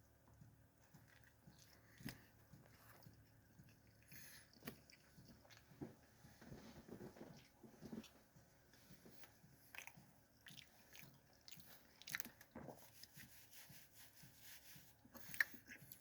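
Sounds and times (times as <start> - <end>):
chewing crunchy sandwich: 9.2 - 12.8.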